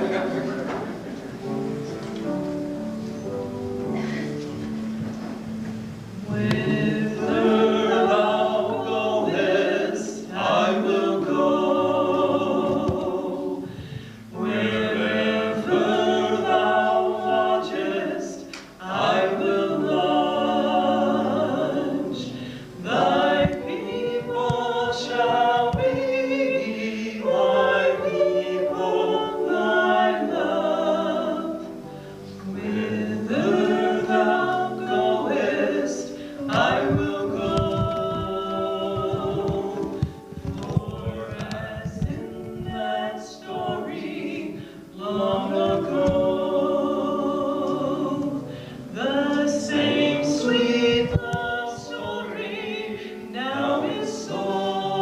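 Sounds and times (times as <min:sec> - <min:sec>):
group of voices singing: 0:06.2 - 0:55.0
singers breathing: 0:13.6 - 0:14.4, 0:22.2 - 0:22.8, 0:31.8 - 0:32.4, 0:36.0 - 0:36.5, 0:44.5 - 0:44.9, 0:48.4 - 0:49.0, 0:53.0 - 0:53.3.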